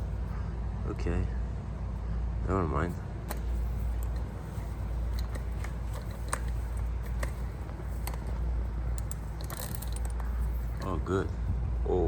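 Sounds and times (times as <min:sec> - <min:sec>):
low hum: 0:00.0 - 0:12.0
push-drill screwdriver clicks and rattles: 0:05.1 - 0:10.8.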